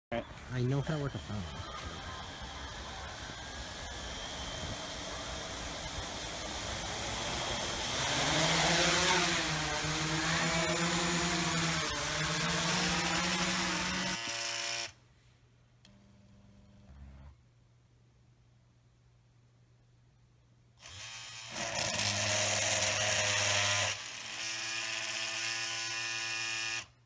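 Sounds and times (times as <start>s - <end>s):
drone rotor rushing noise: 1.0s - 9.5s.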